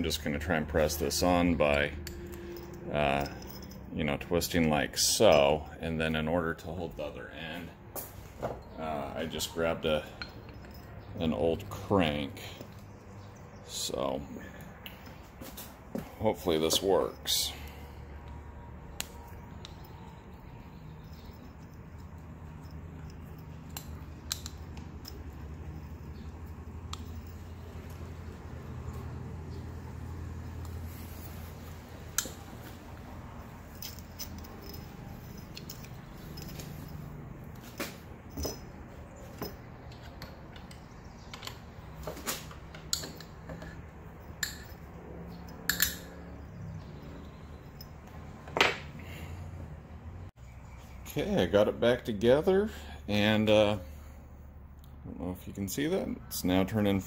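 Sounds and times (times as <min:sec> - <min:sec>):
low steady hum: 0:00.0 - 0:06.2, 0:06.8 - 0:41.8
metal parts and tools clinking: 0:00.1 - 0:49.4.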